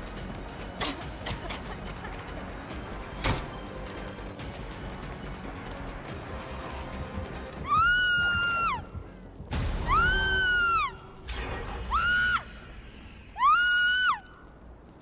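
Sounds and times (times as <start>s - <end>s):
high-pitched screams: 9.8s - 11.0s, 11.6s - 12.7s, 13.3s - 14.5s.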